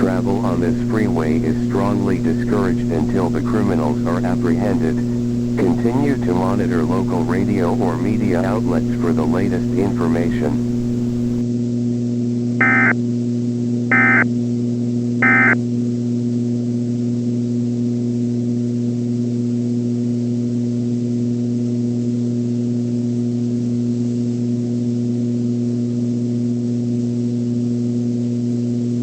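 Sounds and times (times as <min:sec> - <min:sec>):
steady low hum: 0:00.0 - 0:11.4.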